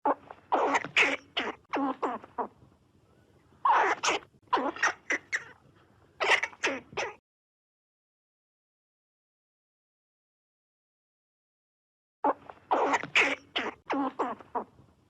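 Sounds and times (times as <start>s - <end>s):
squirrel barking: 0.0s - 2.5s, 3.6s - 5.6s, 6.2s - 7.2s, 12.2s - 14.7s.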